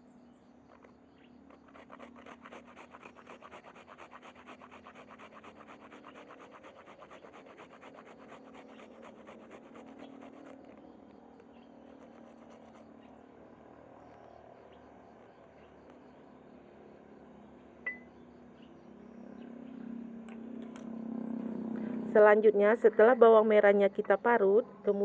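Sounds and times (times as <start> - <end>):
grater rasping: 1.5 - 10.8, 11.8 - 12.9.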